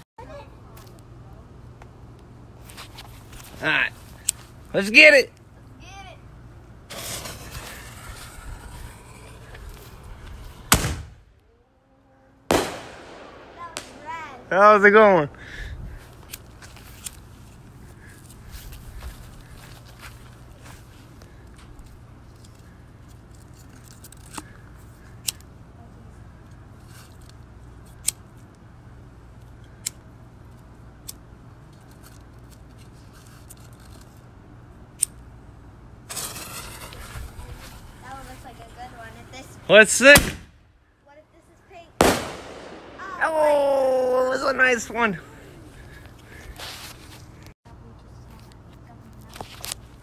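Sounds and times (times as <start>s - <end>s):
firework bangs with echo: 10.7s - 11.2s, 12.5s - 14.4s, 42.0s - 43.2s.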